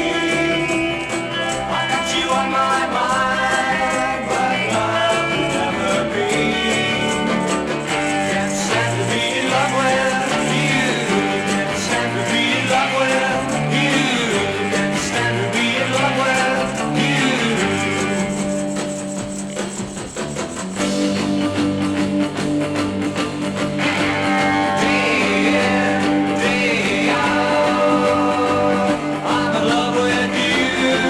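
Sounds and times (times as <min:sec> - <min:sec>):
pop record with guitar and beat: 0:00.0 - 0:31.0.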